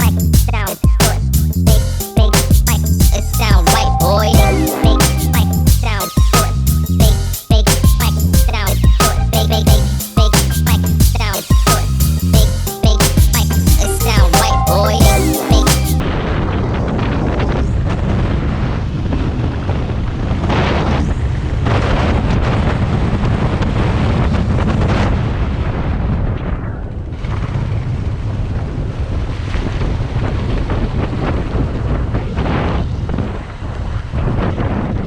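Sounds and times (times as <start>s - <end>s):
wind buffeting microphone: 16.0s - 35.0s.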